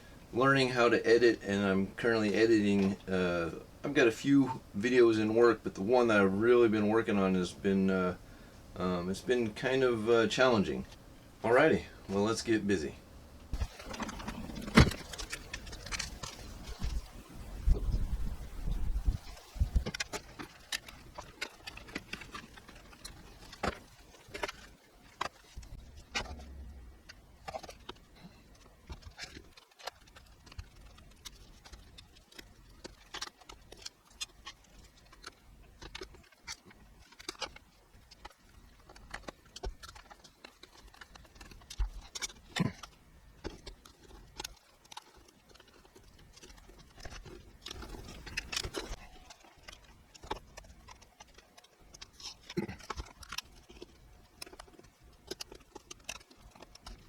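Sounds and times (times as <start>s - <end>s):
hands handling computer hardware: 13.4s - 57.0s.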